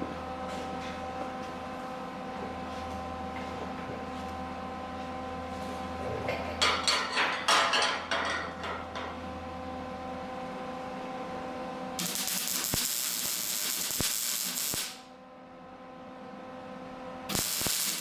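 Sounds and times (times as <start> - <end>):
steady hum: 9.0 - 18.0
welding crackling bursts: 12.0 - 15.1, 17.3 - 18.0
welding hiss: 12.0 - 15.1, 17.3 - 18.0.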